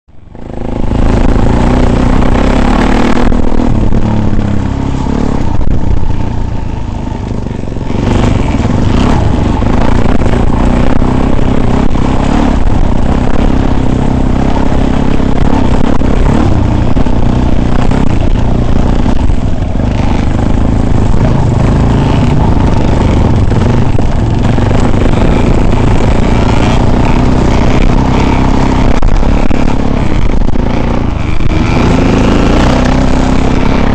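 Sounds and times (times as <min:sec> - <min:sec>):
vehicle engine running: 0:00.1 - 0:33.9.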